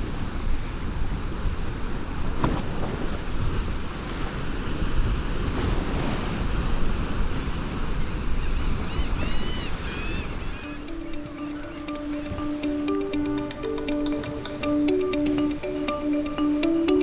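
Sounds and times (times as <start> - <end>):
wind buffeting microphone: 0.0 - 13.4
ocean surf washing on beach: 0.0 - 17.0.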